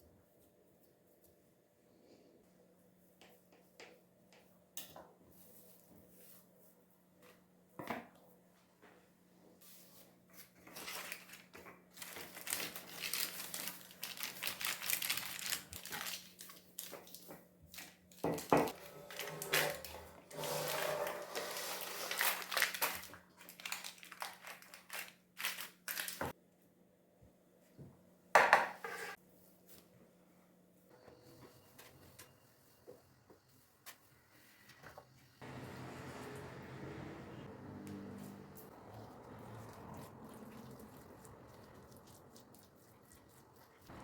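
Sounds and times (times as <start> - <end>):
crinkling and rustling handling: 3.0 - 26.4.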